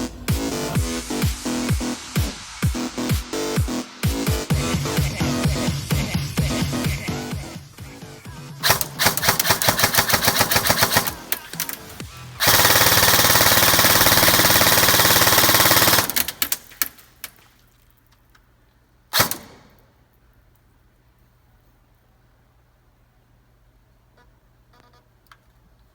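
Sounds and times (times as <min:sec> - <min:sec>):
airsoft gun firing full auto: 0:08.6 - 0:17.0, 0:19.1 - 0:19.9.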